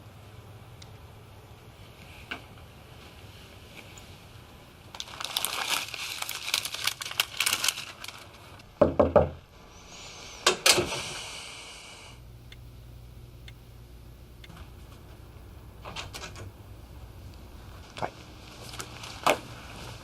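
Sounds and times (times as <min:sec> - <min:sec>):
brief hiss: 0:09.8 - 0:12.2.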